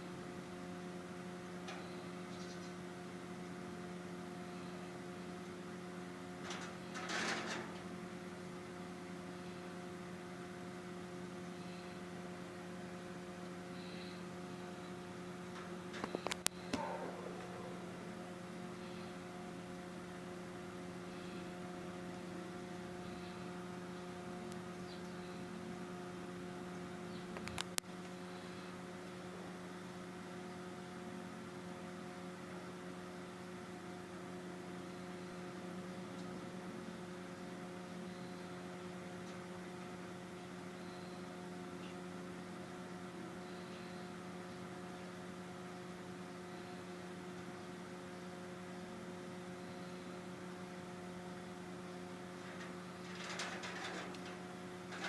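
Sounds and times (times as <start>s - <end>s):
electrical hum: 0.0s - 55.0s.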